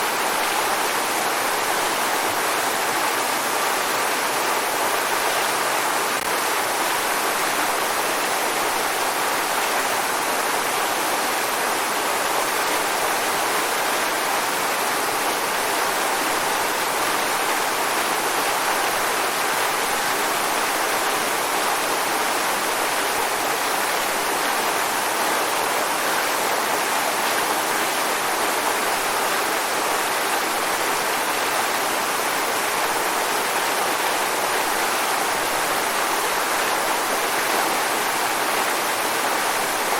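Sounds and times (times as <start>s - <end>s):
waterfall rushing water: 0.0s - 39.9s.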